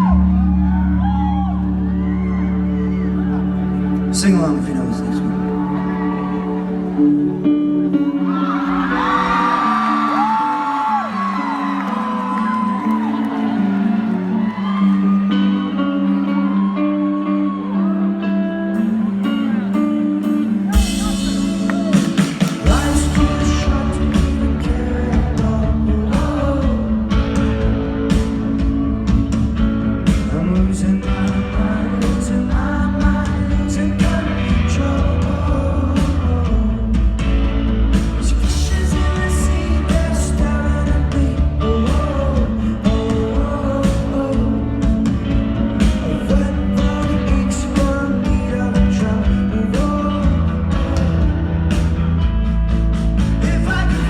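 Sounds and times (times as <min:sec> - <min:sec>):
person singing: 0:00.0 - 0:52.1, 0:53.2 - 0:54.0
rock band playing live: 0:00.0 - 0:54.0
steady drum beat: 0:20.8 - 0:54.0.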